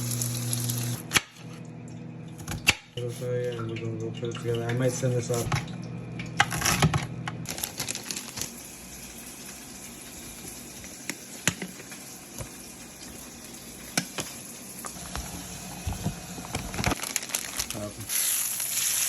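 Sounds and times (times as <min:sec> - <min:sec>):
food sizzling in hot pan: 0:00.0 - 0:01.0, 0:18.1 - 0:19.0.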